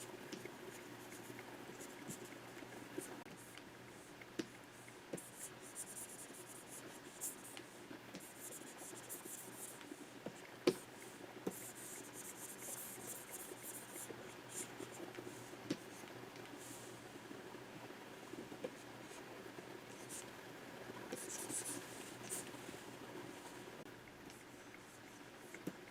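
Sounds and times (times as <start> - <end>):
stylus scratching on screen: 5.2 - 7.6, 8.2 - 9.9, 11.5 - 15.5, 21.1 - 22.6.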